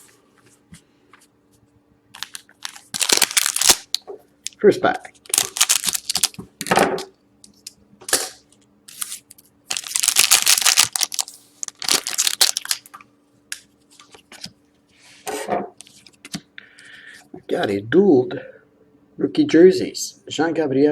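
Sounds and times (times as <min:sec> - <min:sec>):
wrapper tearing and crinkling: 0:02.2 - 0:04.0, 0:05.3 - 0:06.4, 0:08.9 - 0:12.9.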